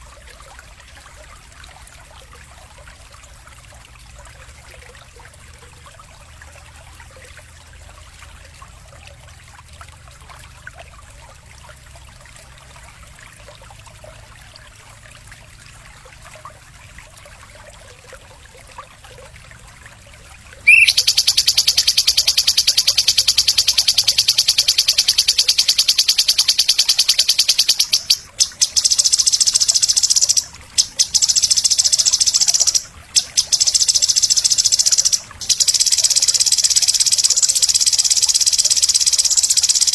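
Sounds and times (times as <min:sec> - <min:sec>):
high-pitched buzzing trill: 0:20.7 - 0:39.9.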